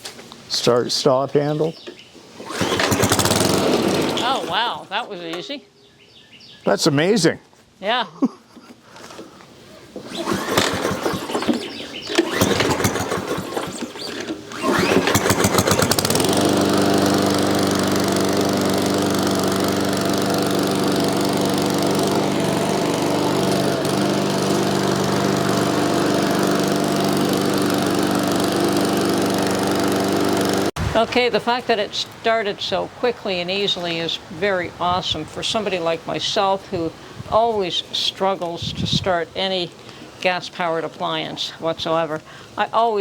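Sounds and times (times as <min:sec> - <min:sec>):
lawn mower engine starting: 0:01.9 - 0:05.5, 0:09.0 - 0:31.0.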